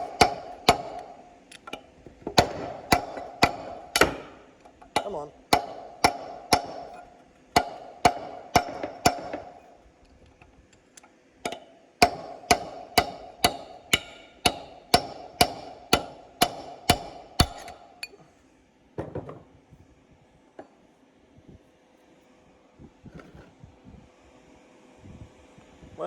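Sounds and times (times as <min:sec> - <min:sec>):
hammer striking steel punch: 0:00.0 - 0:09.8, 0:11.4 - 0:18.2.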